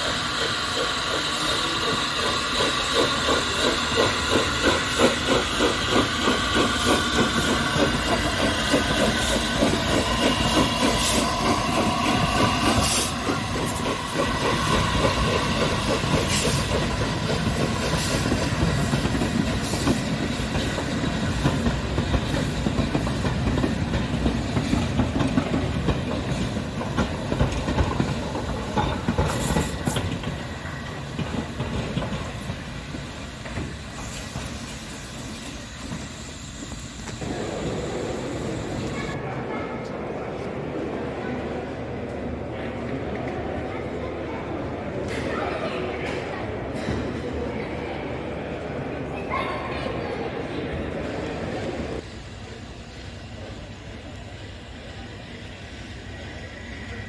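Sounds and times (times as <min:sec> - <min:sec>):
steam locomotive rhythmic beat: 0:00.0 - 0:30.4.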